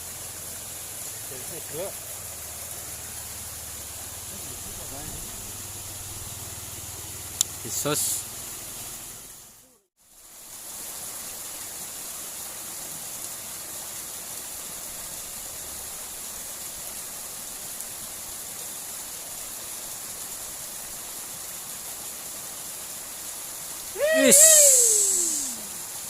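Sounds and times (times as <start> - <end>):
water rushing in a ditch: 0.0 - 26.0.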